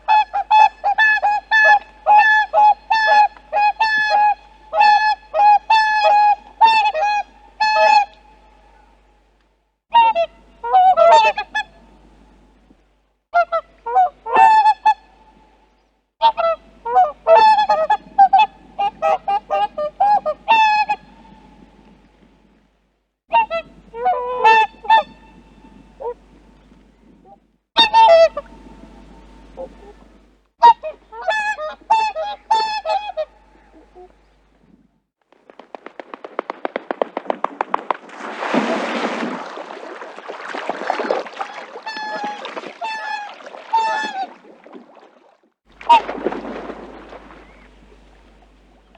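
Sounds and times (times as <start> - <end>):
geese honking: 0.0 - 9.0, 10.0 - 12.0, 13.4 - 15.4, 16.2 - 21.7, 23.3 - 26.7, 27.8 - 34.3, 41.3 - 45.1, 45.8 - 48.9.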